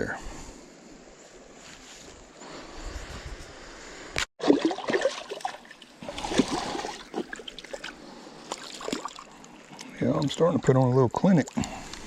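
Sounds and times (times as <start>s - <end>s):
creek water splashing and trickling: 4.4s - 12.0s.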